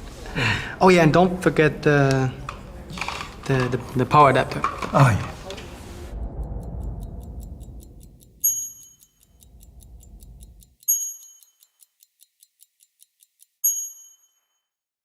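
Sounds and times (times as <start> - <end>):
low hum: 5.8 - 10.8
bright bell-like chimes: 6.4 - 9.4, 10.8 - 11.8, 13.6 - 14.7
fast mechanical ticking: 6.4 - 13.6.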